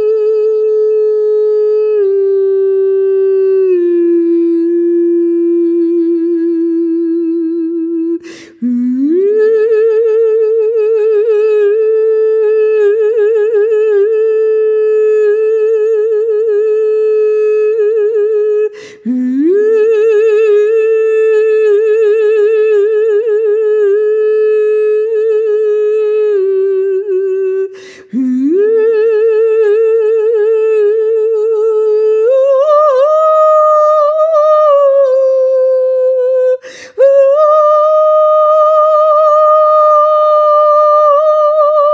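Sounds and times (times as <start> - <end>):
woman singing wordless long notes: 0.0 - 41.9
singer breathing: 8.2 - 8.7, 18.7 - 19.1, 27.7 - 28.2, 36.6 - 37.0.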